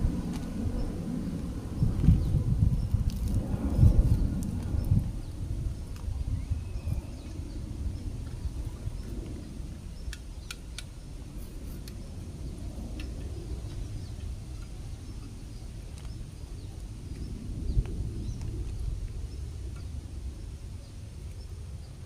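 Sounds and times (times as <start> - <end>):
low uneven rumble: 0.0 - 10.4.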